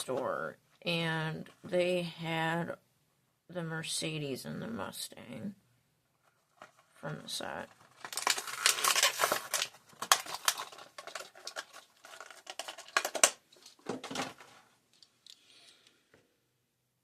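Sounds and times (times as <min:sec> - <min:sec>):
plastic packaging clicks and crinkles: 0:06.2 - 0:07.0, 0:07.6 - 0:15.4.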